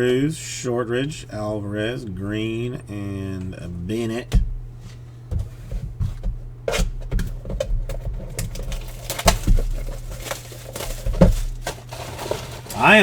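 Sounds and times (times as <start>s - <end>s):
steady low hum: 0.0s - 13.0s
cards tapping and scraping: 4.3s - 13.0s.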